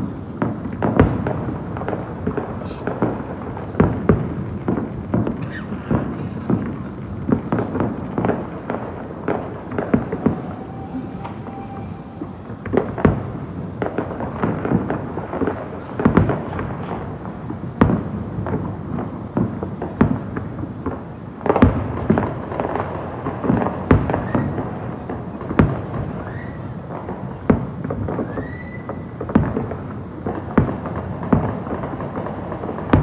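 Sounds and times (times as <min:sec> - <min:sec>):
fireworks bangs and crackling: 0:00.0 - 0:33.0
rising firework whistle: 0:07.5 - 0:14.6, 0:25.9 - 0:27.0, 0:28.1 - 0:29.2.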